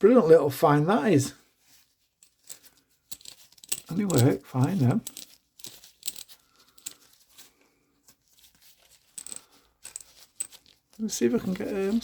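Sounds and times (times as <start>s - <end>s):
metal hand tools clinking: 2.2s - 7.2s, 8.9s - 12.0s.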